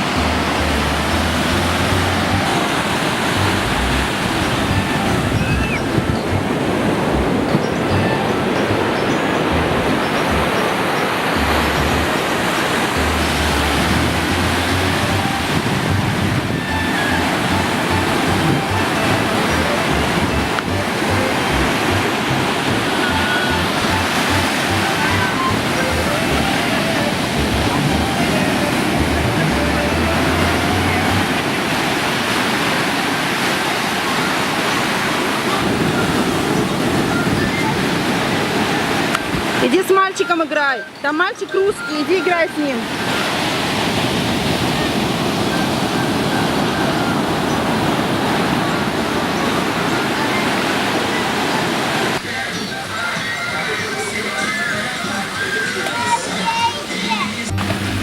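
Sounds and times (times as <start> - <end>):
wind buffeting microphone: 0.0 - 39.7
rushing water: 0.0 - 58.0
sea surf roaring: 0.0 - 58.0.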